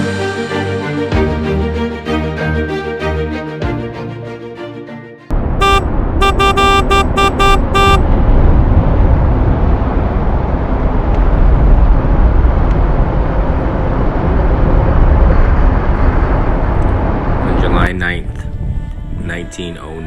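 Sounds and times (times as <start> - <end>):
low rumble: 5.3 - 19.3
short horn toots: 5.6 - 8.1.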